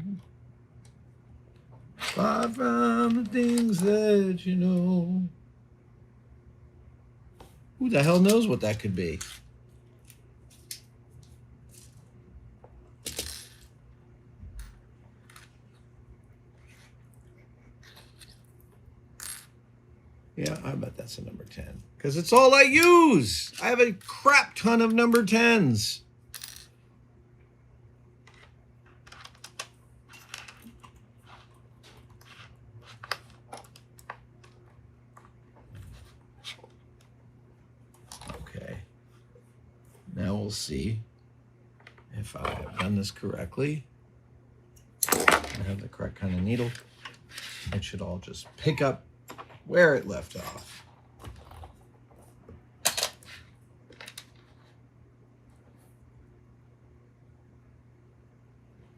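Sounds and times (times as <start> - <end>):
faint steady hum: 0.0 - 58.9.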